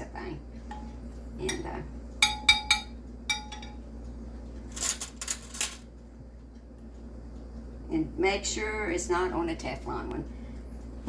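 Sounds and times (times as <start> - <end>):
metal kitchenware clinking: 1.5 - 3.8, 4.7 - 5.8.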